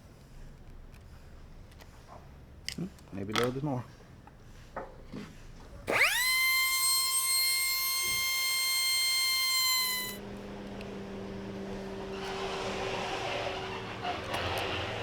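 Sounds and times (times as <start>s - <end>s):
power drill whining: 5.9s - 10.2s.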